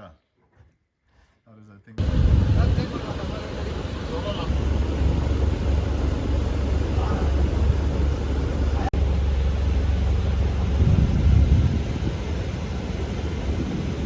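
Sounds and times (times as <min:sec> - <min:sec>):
boat engine low rumble: 0:02.0 - 0:14.0
wind buffeting microphone: 0:02.0 - 0:14.0.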